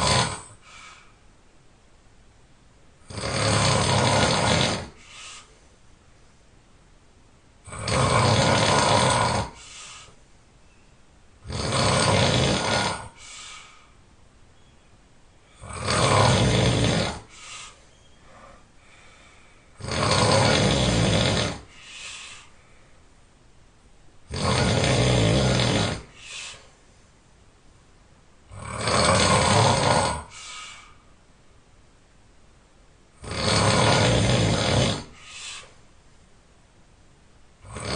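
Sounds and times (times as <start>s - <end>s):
person snoring loudly: 0.0s - 0.9s, 3.0s - 5.1s, 7.6s - 10.1s, 11.4s - 13.2s, 15.5s - 17.4s, 19.7s - 21.8s, 24.3s - 26.3s, 28.5s - 30.8s, 33.2s - 35.7s, 37.6s - 37.9s
person breathing: 0.0s - 1.3s, 5.0s - 5.8s, 9.5s - 10.3s, 13.1s - 14.0s, 17.2s - 19.8s, 21.7s - 23.1s, 26.0s - 27.2s, 30.2s - 31.2s, 35.0s - 35.9s
short quiet breath: 21.7s - 23.0s, 26.2s - 26.8s, 35.2s - 35.9s.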